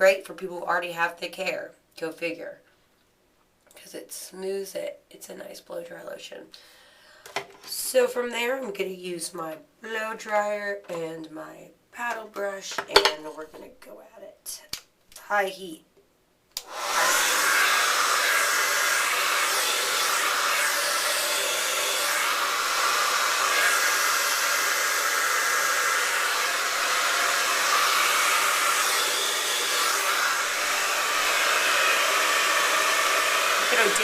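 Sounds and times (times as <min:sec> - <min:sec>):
hair dryer switch click: 0:16.6 - 0:16.8
hair dryer running: 0:16.6 - 0:34.0.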